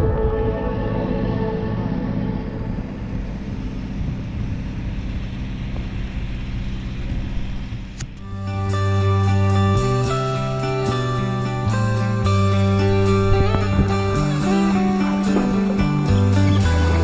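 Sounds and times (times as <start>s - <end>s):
background music: 0.0s - 3.8s, 8.2s - 17.0s
engine drone: 0.0s - 17.0s
rushing noise: 0.0s - 17.0s
music with plucked notes: 8.2s - 17.0s.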